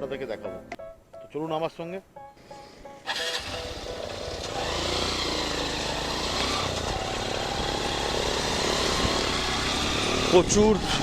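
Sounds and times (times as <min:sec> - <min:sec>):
motorcycle engine running: 0:03.1 - 0:11.0.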